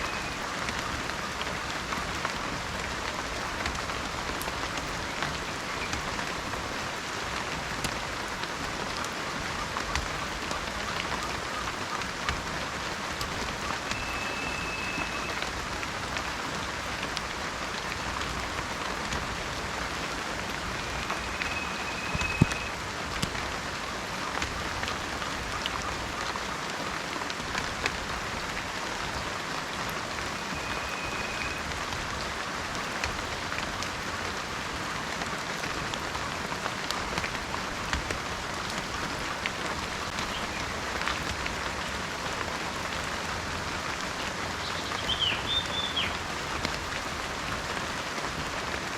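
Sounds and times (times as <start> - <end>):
heavy rain falling: 0.0 - 48.9
high whistled notes: 20.8 - 22.7.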